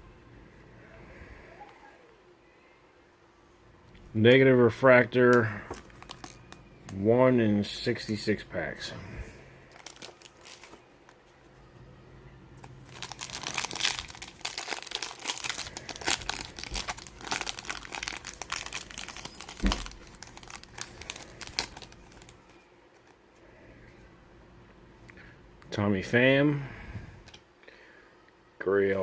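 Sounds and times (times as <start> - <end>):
foil wrapper tearing and crinkling: 5.7 - 6.6, 9.7 - 10.8, 12.8 - 22.5.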